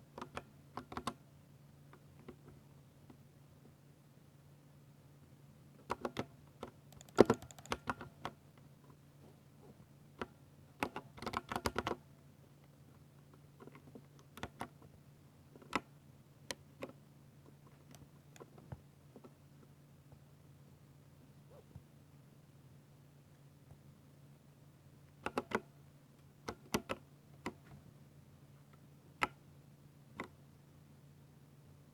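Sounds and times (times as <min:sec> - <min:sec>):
mechanical keyboard typing: 0:05.9 - 0:08.4.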